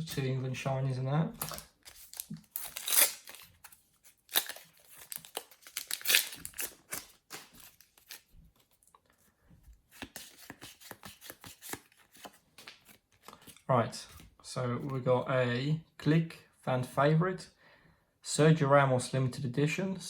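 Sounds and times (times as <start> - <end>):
foil packet tearing and crinkling: 1.4 - 8.3
cards clicking: 10.0 - 13.6.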